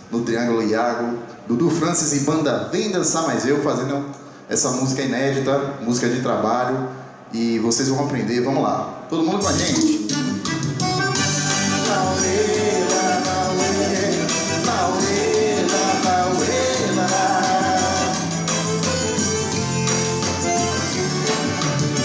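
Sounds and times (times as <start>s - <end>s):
band playing dance music: 9.4s - 22.0s
drum beat: 11.1s - 22.0s.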